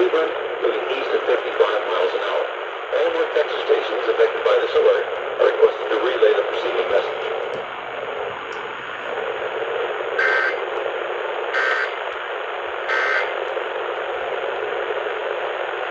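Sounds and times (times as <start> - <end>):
radio hiss: 0.0 - 15.9
warbling two-tone data tones: 10.2 - 10.6, 11.6 - 12.0, 12.9 - 13.4.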